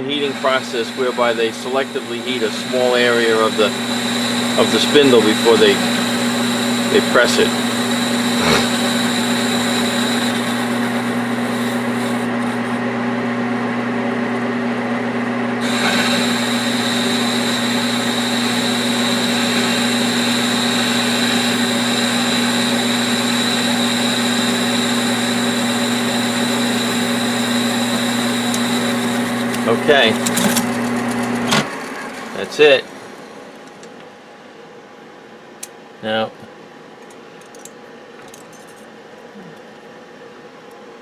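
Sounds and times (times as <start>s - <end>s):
high-pitched metal cutting noise: 0.0s - 12.3s, 15.6s - 29.4s
machine tool humming and whining: 0.0s - 12.9s, 15.5s - 33.5s.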